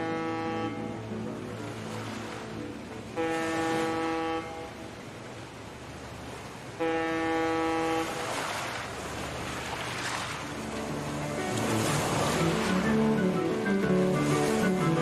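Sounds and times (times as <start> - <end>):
horn blasts: 0.0 - 1.0, 3.1 - 4.8, 6.8 - 8.2.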